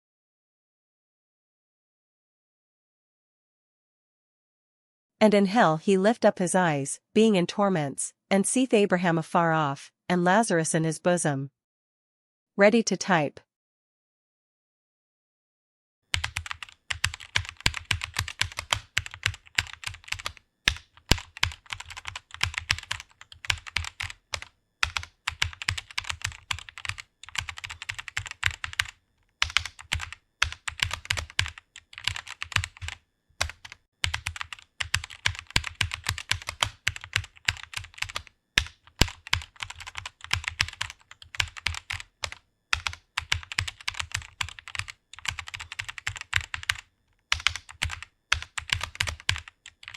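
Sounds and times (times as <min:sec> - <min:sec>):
fast typing on keyboard: 0:16.1 - 0:49.9.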